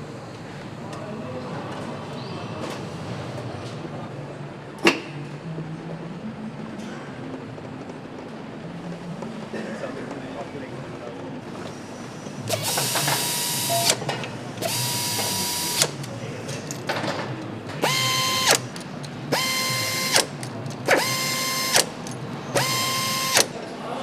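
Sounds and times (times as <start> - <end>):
power tool whine: 12.5 - 13.9, 14.6 - 15.9, 17.8 - 18.6, 19.3 - 20.2, 20.9 - 21.9, 22.6 - 23.5.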